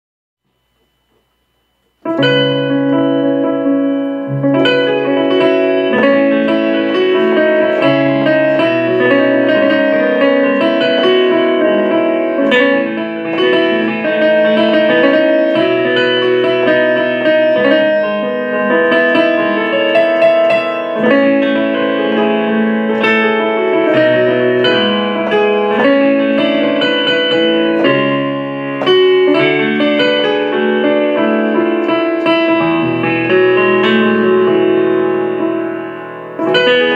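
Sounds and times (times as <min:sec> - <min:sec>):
keyboard playing chords: 0:00.5 - 0:36.9.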